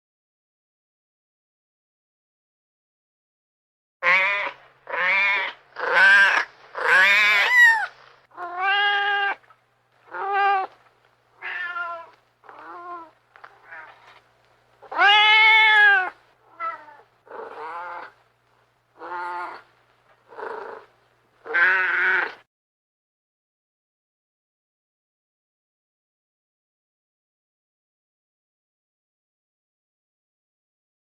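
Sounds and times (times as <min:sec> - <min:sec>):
angry cat yowling: 0:04.0 - 0:09.4, 0:10.1 - 0:10.7, 0:11.4 - 0:14.2, 0:14.8 - 0:18.2, 0:19.0 - 0:19.7, 0:20.3 - 0:20.9, 0:21.5 - 0:22.4.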